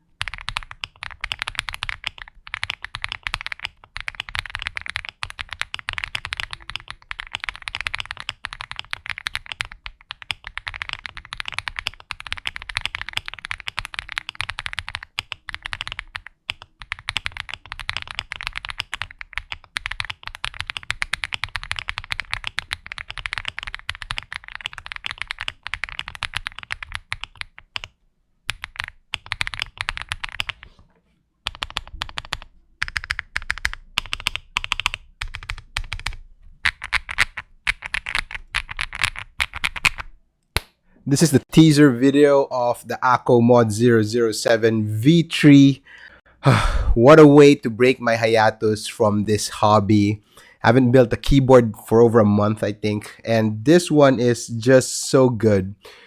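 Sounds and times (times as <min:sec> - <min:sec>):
mechanical keyboard typing: 0:00.2 - 0:30.6, 0:31.4 - 0:40.1.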